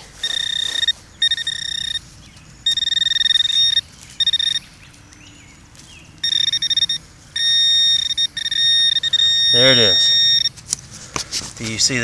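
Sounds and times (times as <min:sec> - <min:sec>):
metal detector high-pitched tone: 0:00.0 - 0:02.0, 0:02.6 - 0:04.6, 0:06.2 - 0:10.5.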